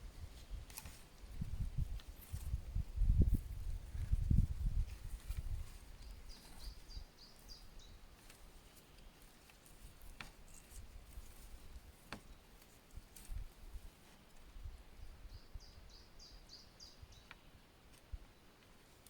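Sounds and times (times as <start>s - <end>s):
small bird chirping: 3.9s - 8.2s, 15.0s - 17.6s.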